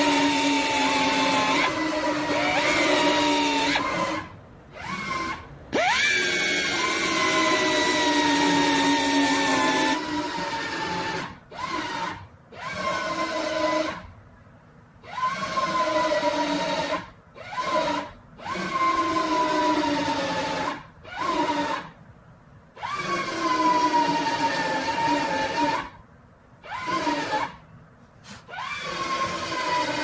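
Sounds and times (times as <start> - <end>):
power drill whining: 0.0 - 10.0.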